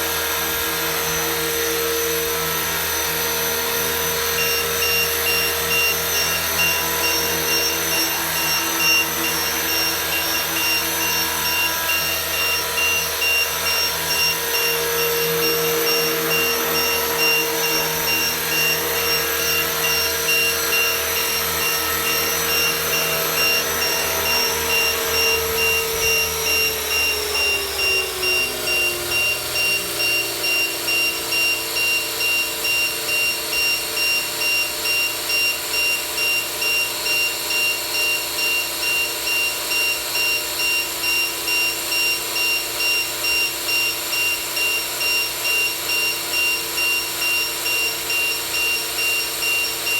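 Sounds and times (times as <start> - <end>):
rc helicopter motor and rotor whine: 0.0 - 49.9.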